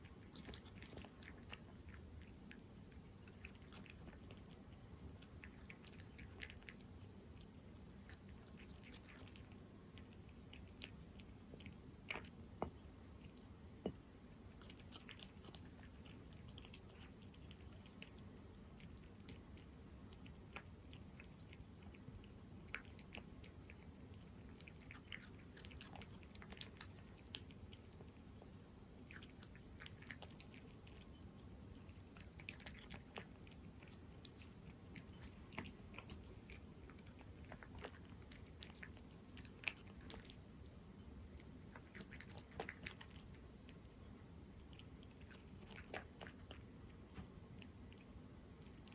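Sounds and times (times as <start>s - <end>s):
cat chewing wet food: 0.0s - 48.9s.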